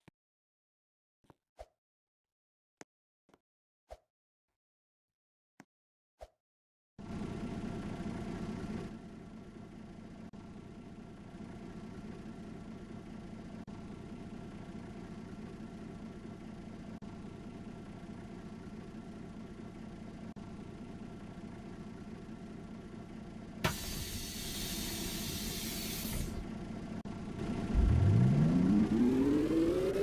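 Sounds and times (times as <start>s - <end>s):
bus engine droning: 7.0s - 30.0s.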